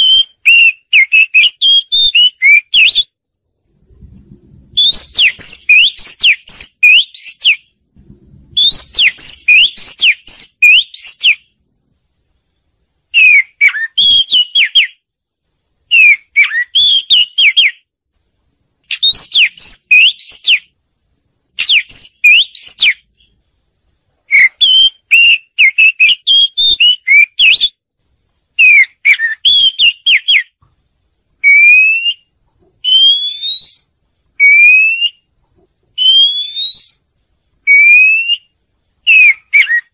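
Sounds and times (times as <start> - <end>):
bird whistling song: 0.0 - 3.2, 4.7 - 7.8, 8.5 - 11.6, 13.1 - 15.0, 15.9 - 17.9, 18.8 - 20.8, 21.6 - 23.4, 24.3 - 27.8, 28.6 - 30.6, 31.4 - 35.3, 36.0 - 37.0, 37.6 - 39.9.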